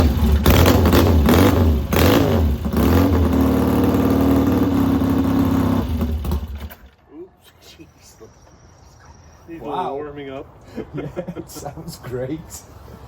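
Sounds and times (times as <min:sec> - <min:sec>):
motorcycle engine revving and idling: 0:00.0 - 0:06.8.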